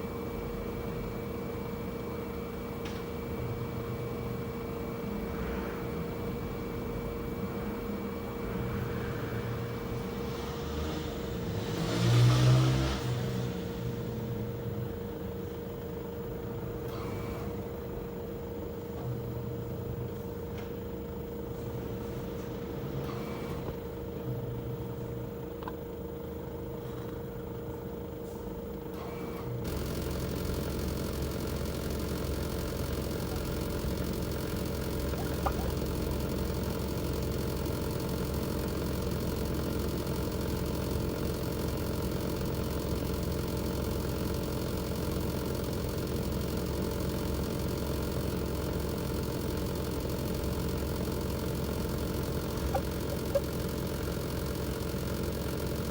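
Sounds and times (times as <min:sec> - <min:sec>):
abnormal air conditioner noise: 0:13.5 - 0:55.9.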